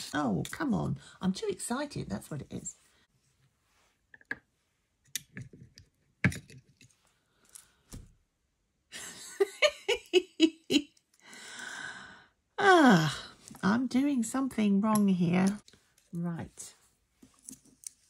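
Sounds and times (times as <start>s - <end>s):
woman giggling: 8.9s - 10.9s.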